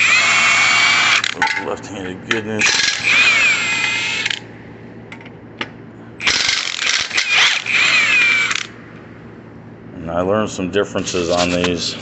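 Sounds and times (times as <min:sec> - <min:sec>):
power tool whirring and ratcheting: 0:00.0 - 0:01.4, 0:02.6 - 0:04.4, 0:06.2 - 0:08.8.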